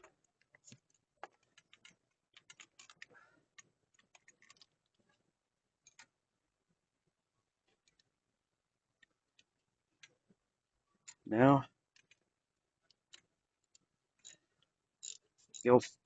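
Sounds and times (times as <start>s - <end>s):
metallic clicks of hand tools: 15.0s - 15.8s.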